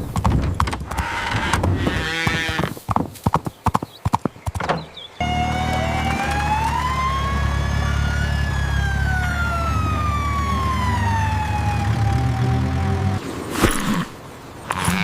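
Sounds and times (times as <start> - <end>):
vehicle engine rumble: 4.6 - 13.2
siren wailing: 5.2 - 13.2.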